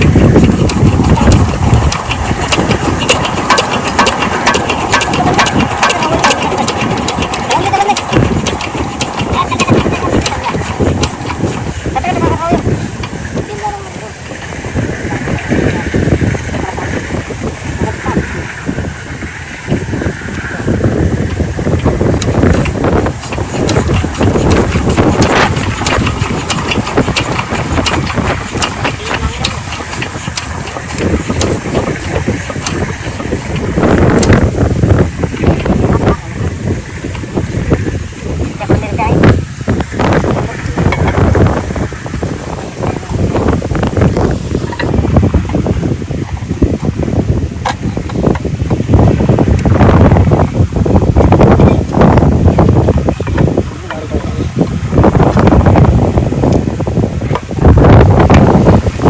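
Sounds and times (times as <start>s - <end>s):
diesel engine knocking: 0.0s - 18.6s, 19.2s - 59.0s
wind on microphone: 0.0s - 59.0s.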